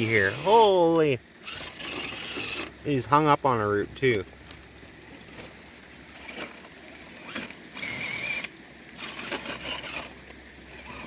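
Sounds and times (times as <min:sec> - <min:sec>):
small electric motor whining: 0:00.0 - 0:02.8, 0:05.1 - 0:11.0
tyres clicking and scraping on roots: 0:00.0 - 0:02.8, 0:04.0 - 0:11.0.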